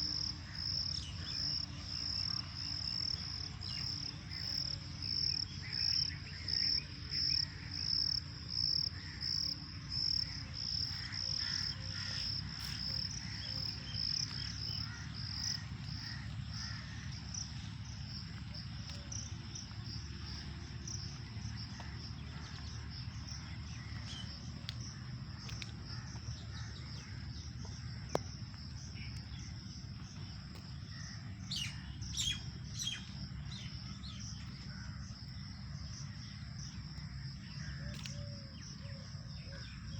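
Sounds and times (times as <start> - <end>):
low background rumble: 0.0 - 37.8
sharp bird calls: 30.8 - 35.4.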